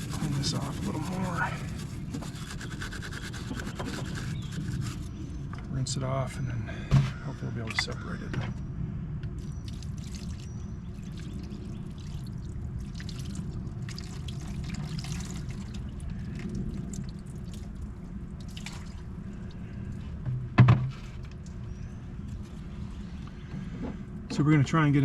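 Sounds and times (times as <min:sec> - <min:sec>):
water splashing and dripping: 0:09.4 - 0:19.6.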